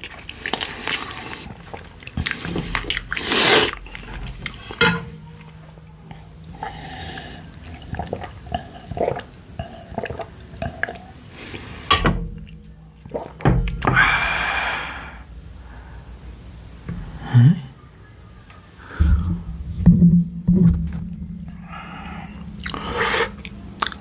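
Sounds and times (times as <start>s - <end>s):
person chewing: 0.0s - 4.8s, 22.4s - 24.0s.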